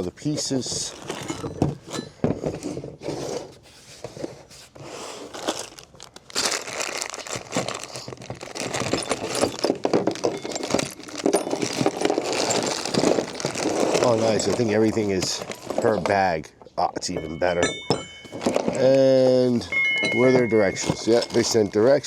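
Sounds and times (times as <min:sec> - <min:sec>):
packaging crinkling and tearing: 0:05.2 - 0:16.0, 0:20.2 - 0:22.0
hardware clicks and knocks: 0:15.4 - 0:18.8, 0:19.7 - 0:21.7.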